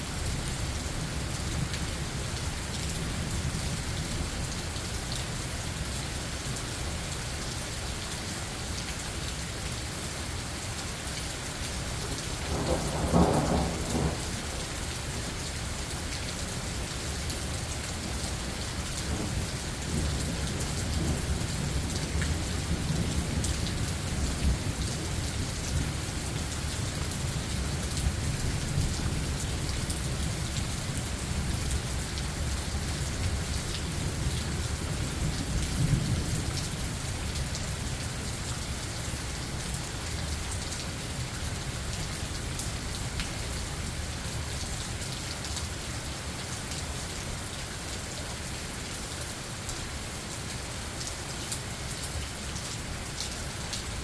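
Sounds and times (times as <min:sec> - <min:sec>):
steady rain falling: 0:00.0 - 0:54.0
thunder rumbling: 0:12.4 - 0:14.5.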